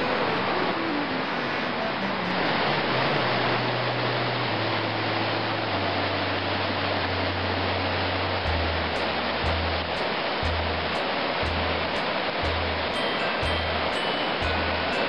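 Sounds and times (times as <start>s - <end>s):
flowing water rushing: 0.0s - 15.0s
slow low music notes: 3.4s - 15.0s.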